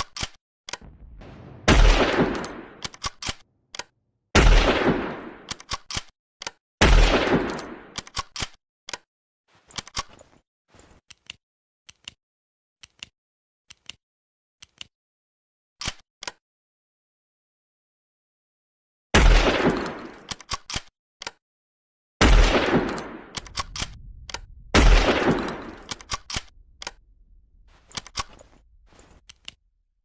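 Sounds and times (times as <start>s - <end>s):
metallic clicks of rifle bolt: 0.0s - 0.8s, 5.5s - 6.6s, 7.5s - 9.1s, 15.8s - 16.4s, 20.2s - 21.4s, 23.3s - 24.5s, 25.6s - 27.0s, 27.8s - 29.6s
rifle shots: 0.8s - 3.4s, 4.4s - 5.5s, 22.2s - 28.6s.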